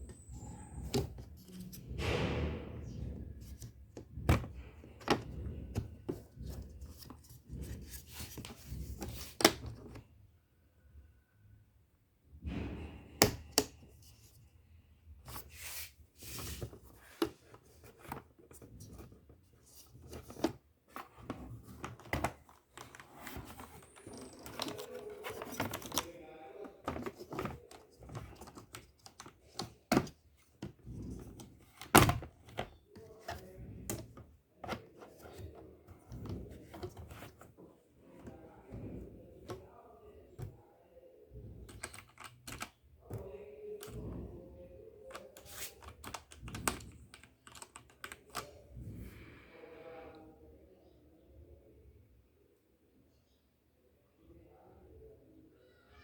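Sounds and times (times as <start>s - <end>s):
mechanical keyboard keystrokes: 41.7s - 42.8s, 45.1s - 48.5s.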